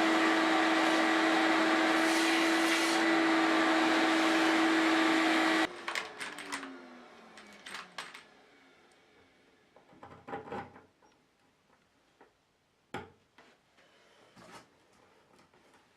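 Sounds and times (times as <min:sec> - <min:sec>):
electric motor tool humming: 0:00.0 - 0:05.7.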